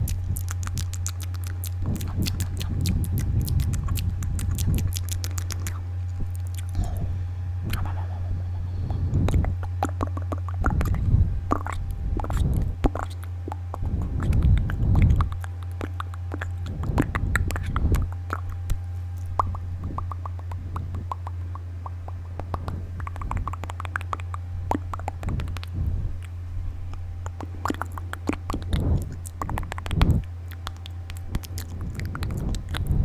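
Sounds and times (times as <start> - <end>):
low electrical hum: 0.0 - 33.0
tongue and lip clicks: 0.0 - 33.0.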